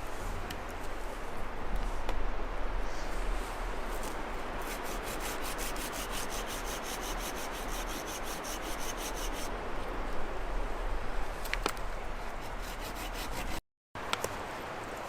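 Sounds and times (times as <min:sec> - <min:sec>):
hand tool rasping wood: 0:04.6 - 0:09.5, 0:12.2 - 0:13.6.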